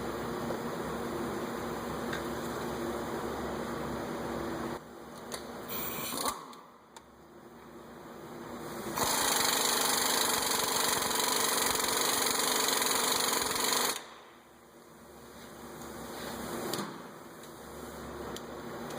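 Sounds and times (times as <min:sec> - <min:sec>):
air impact wrench running: 0:05.7 - 0:06.4, 0:09.0 - 0:14.1.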